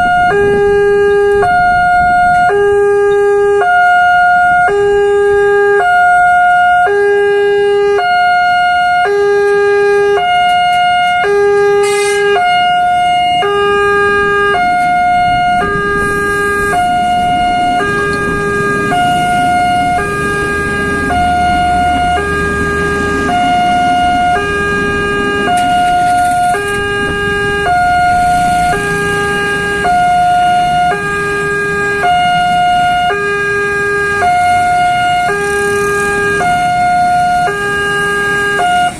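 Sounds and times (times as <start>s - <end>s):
level crossing two-tone alarm: 0.0s - 38.9s
low rumble: 12.6s - 37.5s.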